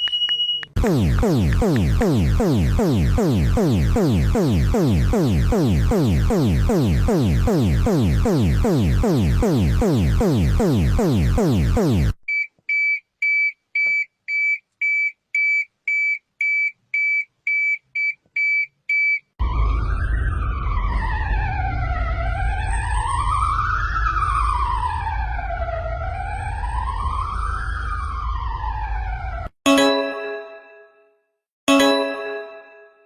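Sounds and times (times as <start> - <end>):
high-pitched alarm beeps: 0.4 - 12.2
rapid falling alarm sweep: 0.8 - 12.2
siren wailing: 0.8 - 12.2, 19.4 - 29.5.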